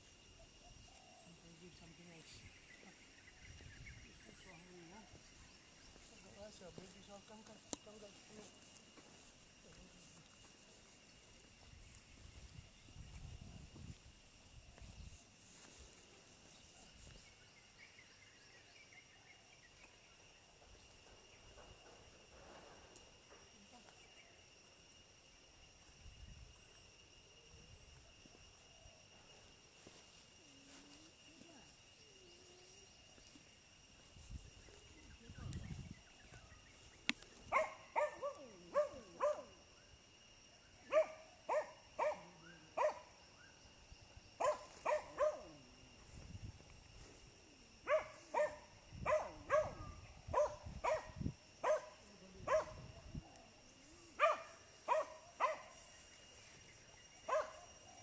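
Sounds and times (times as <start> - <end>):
dog barking: 37.5 - 39.5, 40.9 - 43.1, 44.4 - 45.6, 47.8 - 52.8, 54.2 - 55.8, 57.3 - 57.7.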